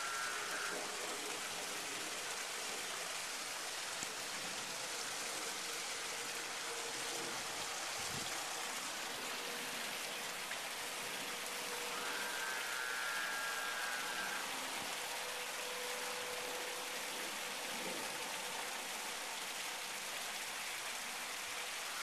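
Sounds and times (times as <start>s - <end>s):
faint steady hum: 0.0s - 22.0s
rain-like hiss of night air: 0.0s - 22.0s.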